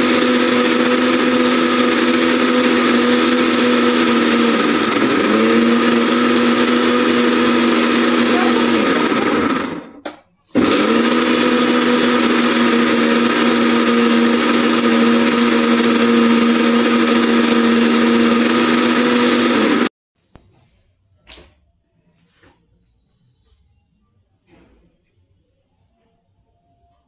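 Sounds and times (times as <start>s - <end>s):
mixer grinder running: 0.0s - 19.9s.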